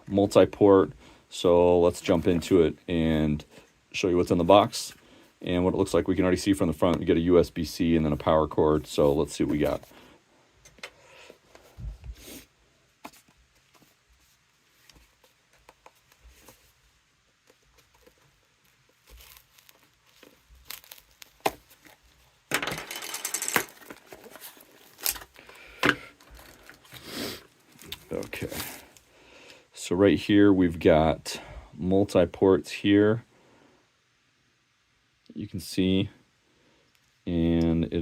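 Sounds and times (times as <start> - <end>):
cardboard and plastic rustling: 13.0 - 29.0
packaging tearing: 17.8 - 22.0, 23.5 - 25.6.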